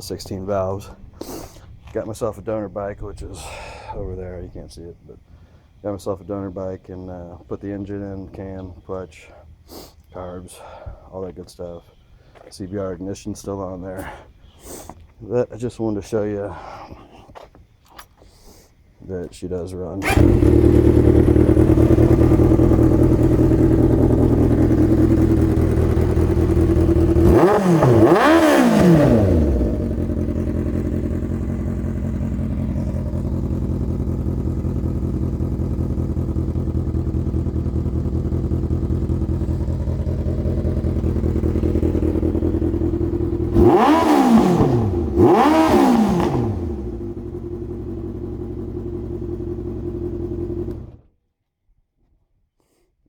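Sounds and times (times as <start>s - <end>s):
motorcycle engine idling and revving: 0.0s - 5.3s, 20.0s - 51.1s.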